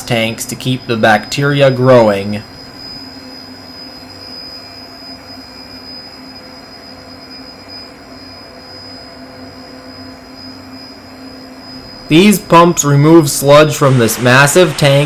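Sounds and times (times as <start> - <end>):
pumps humming with high whine: 0.0 - 15.0.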